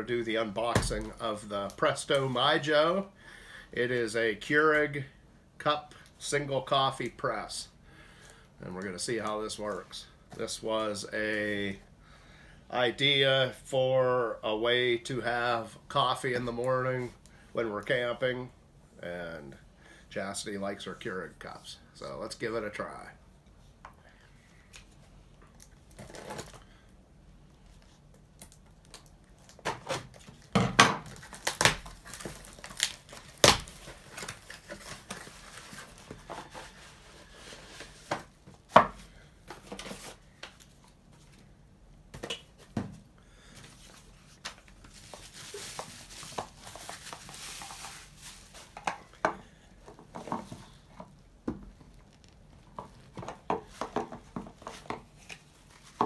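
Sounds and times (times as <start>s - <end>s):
cardboard and plastic rustling: 0.6s - 2.7s, 24.7s - 26.7s, 27.6s - 41.5s, 42.2s - 56.0s.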